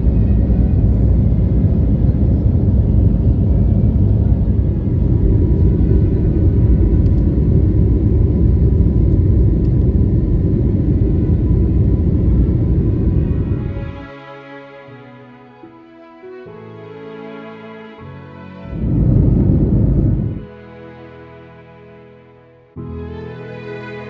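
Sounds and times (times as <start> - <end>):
airliner cabin rumble: 0.0 - 14.1, 18.7 - 20.5
faint steady whine: 0.0 - 14.1, 18.7 - 20.5.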